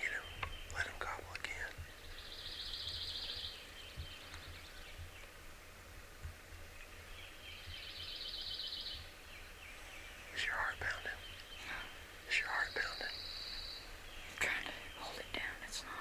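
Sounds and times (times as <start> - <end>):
songbird trilling: 0.0 - 5.3, 7.1 - 16.0
faint low rumble: 9.0 - 16.0.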